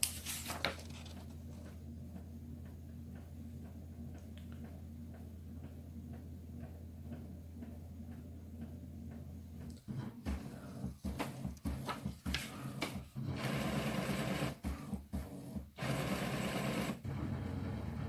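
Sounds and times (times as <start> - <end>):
printer motors whirring and clicking: 4.7 - 18.0.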